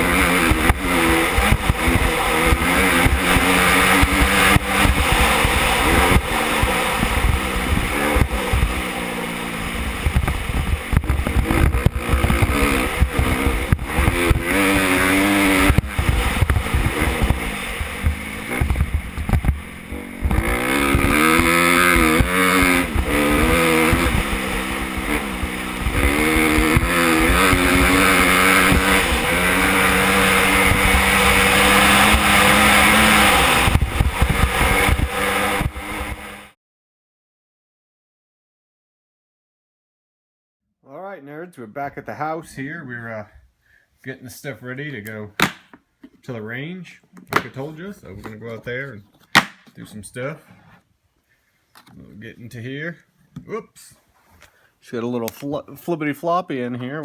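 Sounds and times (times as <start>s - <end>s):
dirt bike engine revving: 0.0s - 36.6s.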